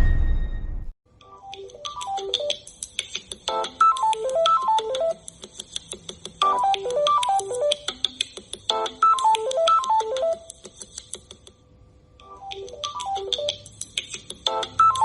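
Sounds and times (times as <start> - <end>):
loud crashing noise: 0.0 - 0.9
smartphone ringtone melody: 8.9 - 10.4, 12.2 - 13.6, 14.6 - 15.0.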